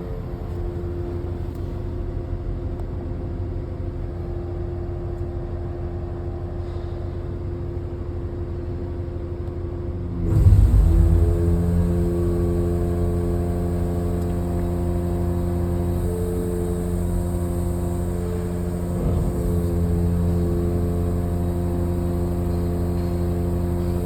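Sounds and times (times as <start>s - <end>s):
heavy diesel engine running: 10.0s - 24.0s.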